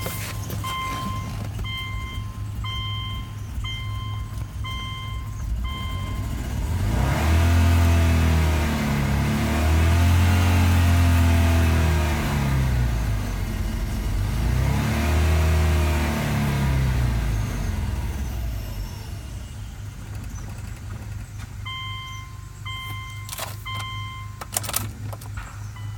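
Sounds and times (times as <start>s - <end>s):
electronic beeps: 0.0s - 6.4s, 21.6s - 24.5s, 25.4s - 25.9s
car engine blip and idle: 0.0s - 25.9s
clicks: 22.8s - 25.9s.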